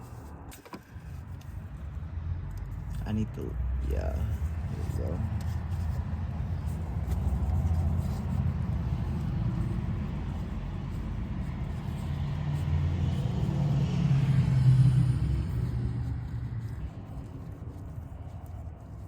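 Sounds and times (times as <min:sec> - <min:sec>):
low mechanical rumble: 0:00.0 - 0:19.0.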